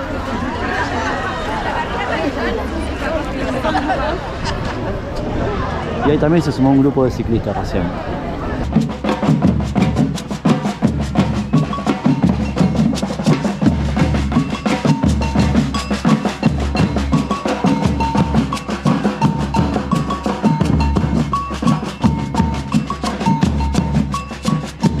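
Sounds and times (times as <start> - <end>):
drums playing fast rhythm: 8.6 - 25.0
high melody: 11.2 - 25.0.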